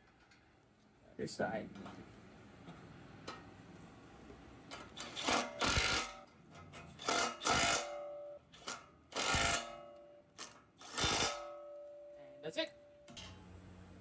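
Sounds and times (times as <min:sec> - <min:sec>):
impact wrench hammering: 0:07.0 - 0:11.7.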